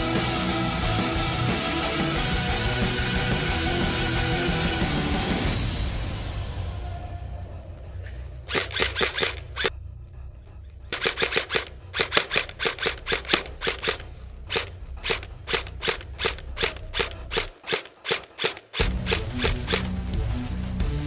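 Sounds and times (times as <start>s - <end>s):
airsoft guns firing: 8.5s - 9.7s, 10.9s - 20.0s.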